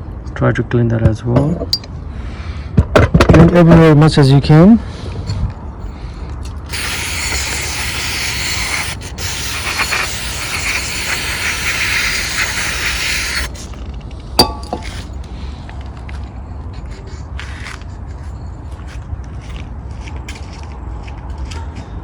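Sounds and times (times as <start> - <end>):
sharp ringing clink: 1.6 - 1.9, 14.4 - 15.0
aerosol spray hissing: 6.7 - 13.7.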